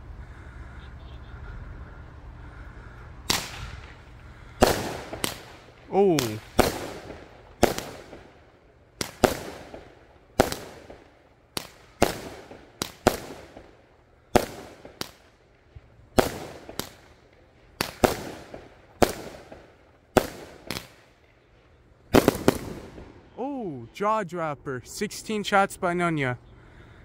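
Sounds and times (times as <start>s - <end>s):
firework bangs: 3.3s - 21.4s, 22.1s - 23.4s.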